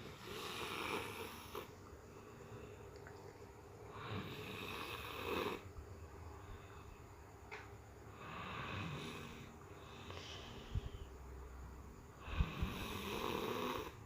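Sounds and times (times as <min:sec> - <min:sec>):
person snoring: 0:00.1 - 0:01.7, 0:03.9 - 0:05.6, 0:08.2 - 0:10.2, 0:12.2 - 0:14.0.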